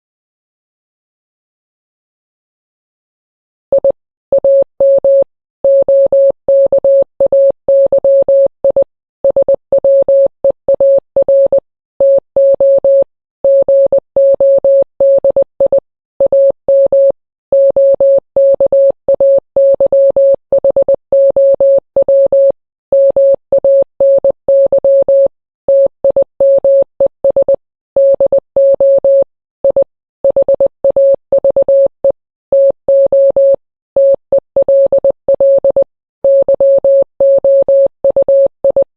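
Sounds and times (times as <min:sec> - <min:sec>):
morse code beeps: 0:03.8 - 0:38.9.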